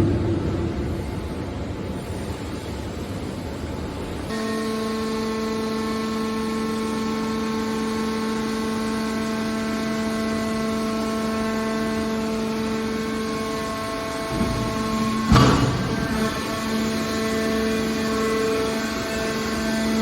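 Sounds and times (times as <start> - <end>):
hydraulic machine hum with whine: 0.0 - 20.0.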